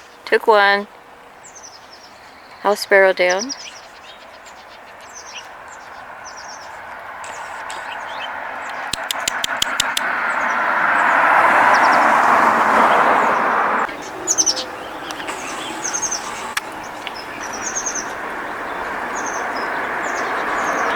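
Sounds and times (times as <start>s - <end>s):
small birds chirping: 0.0s - 20.9s
sharp clicks: 8.7s - 10.1s.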